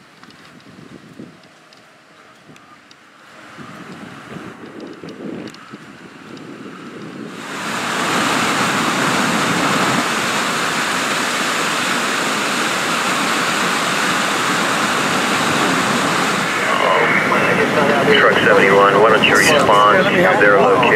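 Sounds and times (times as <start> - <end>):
river water rushing: 7.3 - 20.6.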